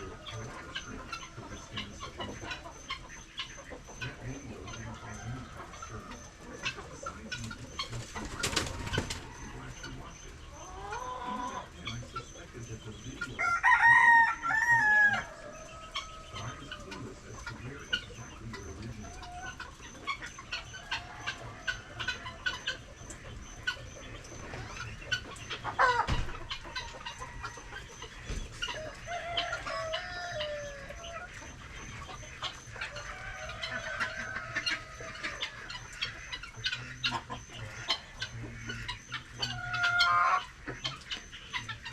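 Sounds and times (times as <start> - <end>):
chickens clucking: 0.0 - 41.9
rooster crowing: 13.4 - 16.9, 28.7 - 31.3, 32.8 - 35.8.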